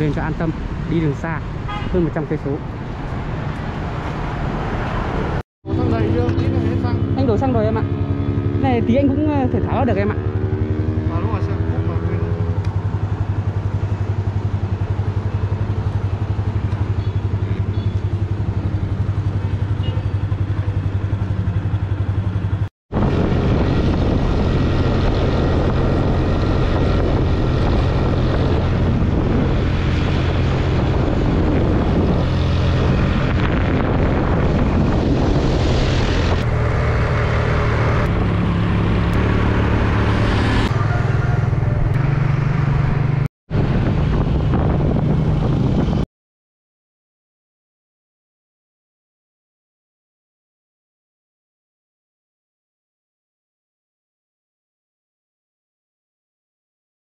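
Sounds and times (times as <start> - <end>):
wind and road noise: 0.0 - 46.1
motorcycle engine running: 5.7 - 46.0.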